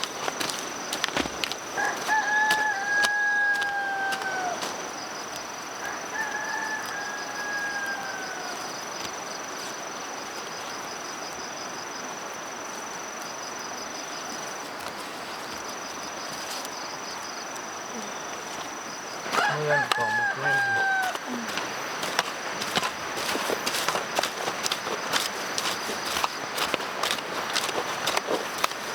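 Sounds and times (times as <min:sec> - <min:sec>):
high pulsing insect trill: 0:00.0 - 0:14.3, 0:15.7 - 0:28.9
rooster crowing: 0:01.7 - 0:04.9, 0:05.8 - 0:08.9, 0:19.2 - 0:23.9.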